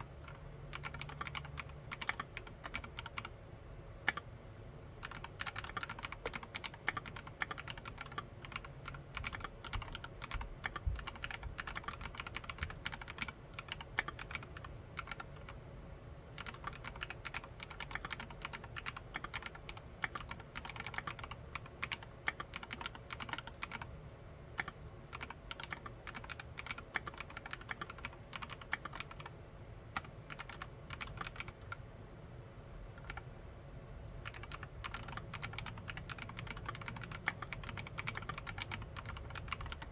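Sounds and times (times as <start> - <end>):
mechanical keyboard key clacks: 5.0 - 15.3, 34.3 - 39.9.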